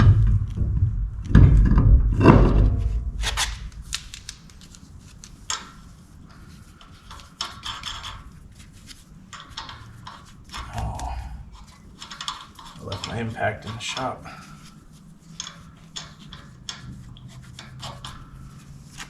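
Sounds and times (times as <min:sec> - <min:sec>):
heavy tire thuds: 0:00.0 - 0:04.4
light clicks and knocks: 0:00.0 - 0:19.0.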